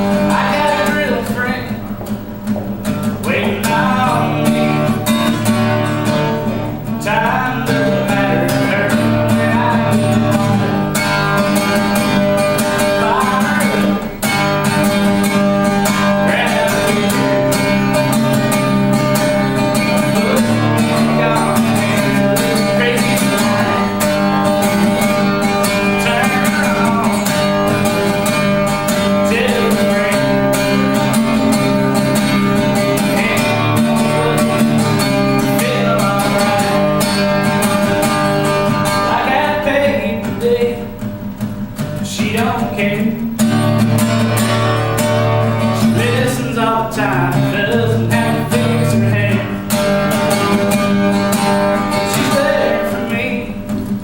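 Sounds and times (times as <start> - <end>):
man singing: 0.0 - 2.2, 2.9 - 41.1, 42.0 - 44.2, 45.2 - 53.8
acoustic guitar strumming: 0.0 - 54.0.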